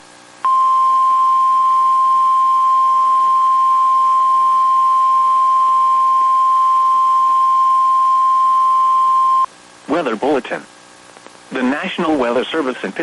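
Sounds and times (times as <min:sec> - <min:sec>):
steady alarm tone: 0:00.5 - 0:09.5.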